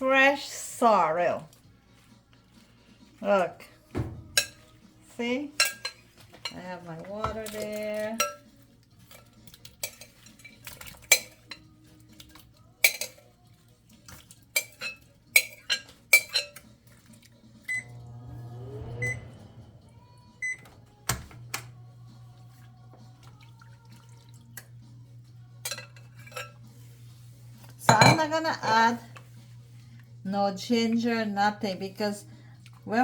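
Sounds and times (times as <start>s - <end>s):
dishes and utensils clinking: 4.0s - 4.9s, 5.5s - 13.4s, 14.0s - 17.8s, 25.6s - 26.9s, 27.6s - 28.9s
steady low hum: 17.6s - 22.5s
short rising tone: 17.7s - 21.5s.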